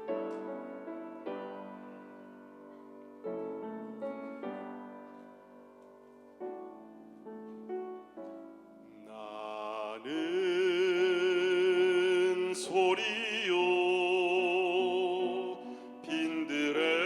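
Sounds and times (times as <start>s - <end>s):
slow piano chords: 0.0s - 17.0s.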